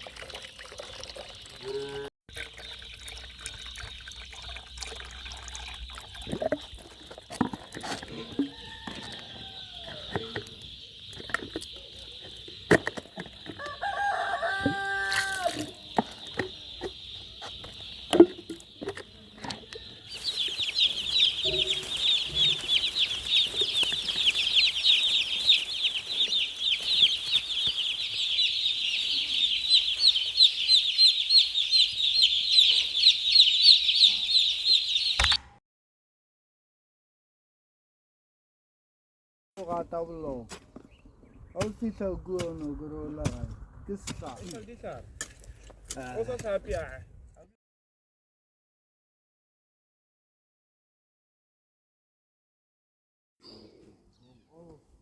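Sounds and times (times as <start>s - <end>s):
chicks peeping: 8.1s - 35.4s
rooster crowing: 8.2s - 10.4s, 13.4s - 16.0s, 19.5s - 35.1s.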